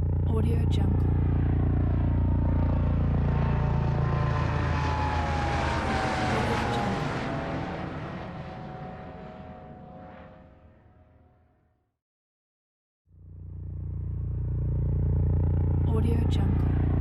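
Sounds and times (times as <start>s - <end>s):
helicopter passing by: 0.0s - 11.6s, 13.1s - 17.0s.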